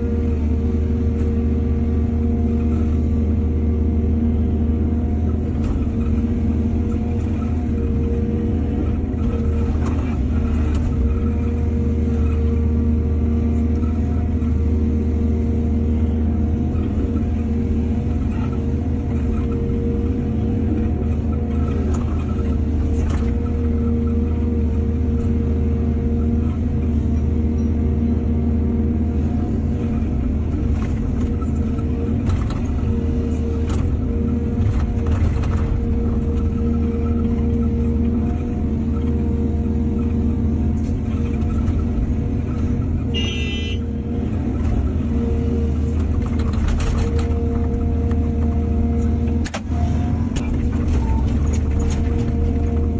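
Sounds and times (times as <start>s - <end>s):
excavator diesel engine droning: 0.0s - 52.9s
clanks and scrapes of digging: 30.5s - 38.4s, 45.8s - 48.2s.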